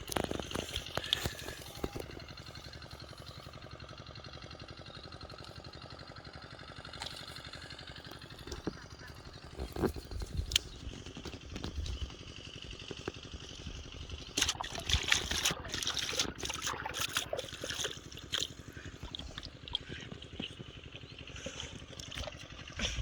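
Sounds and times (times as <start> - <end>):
water splashing and trickling: 14.0 - 23.0.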